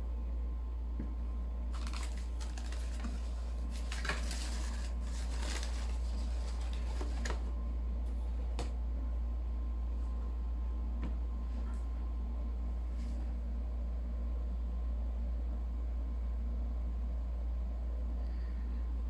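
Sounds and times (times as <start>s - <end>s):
low electrical hum: 0.0s - 19.0s
packaging rustling and crinkling: 1.7s - 7.5s.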